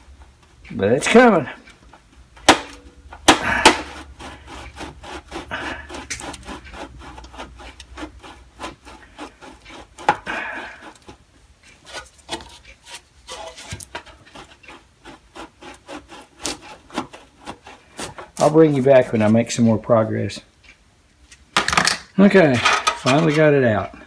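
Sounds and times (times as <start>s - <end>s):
sharp metal knocks: 2.4s - 4.0s
metal grating on metal: 2.4s - 19.8s, 22.4s - 24.0s.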